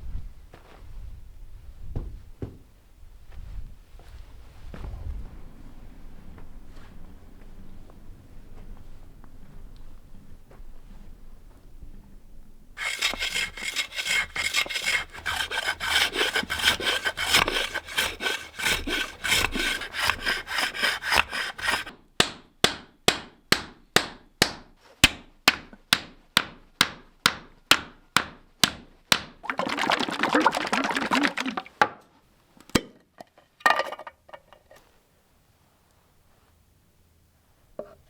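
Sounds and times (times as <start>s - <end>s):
rasping strokes on wood: 12.8s - 21.9s.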